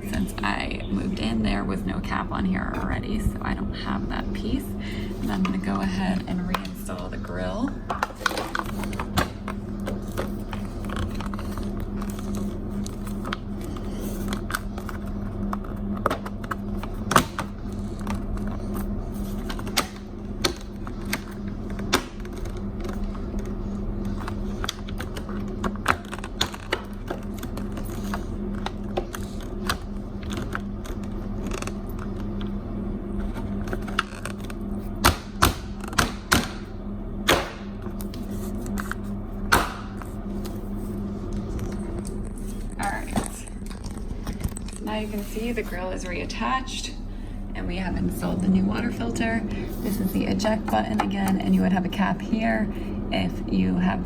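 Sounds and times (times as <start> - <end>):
steady low hum: 0.0 - 54.0
grille clicks and knocks: 33.2 - 40.1.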